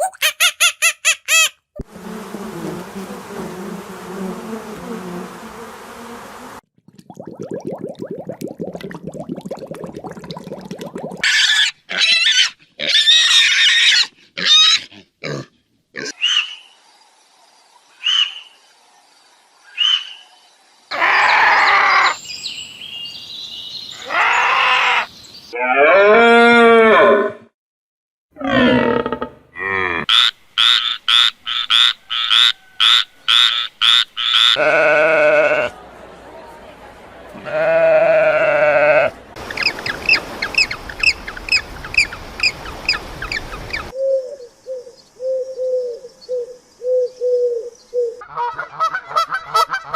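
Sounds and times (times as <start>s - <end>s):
animal buzz: 1.8s - 6.6s.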